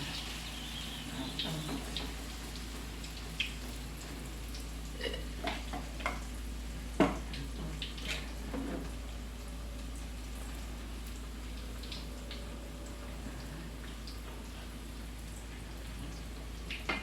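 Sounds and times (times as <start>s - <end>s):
food sizzling in hot oil: 0.0s - 12.3s.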